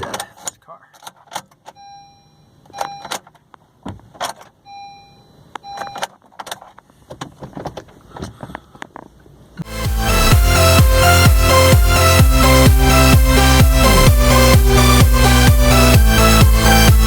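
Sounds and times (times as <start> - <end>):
car dashboard chime beeps: 4.6 - 6.0
electronic music: 9.6 - 17.0.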